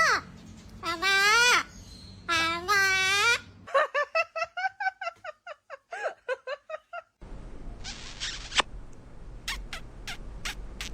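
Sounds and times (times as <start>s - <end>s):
steady hiss and hum: 7.2s - 10.9s
squeaky animal chirps: 9.5s - 10.9s.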